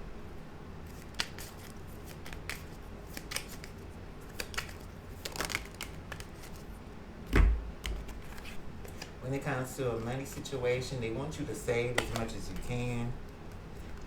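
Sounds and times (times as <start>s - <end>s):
cards clicking on a table: 0.9s - 6.6s, 11.9s - 12.9s.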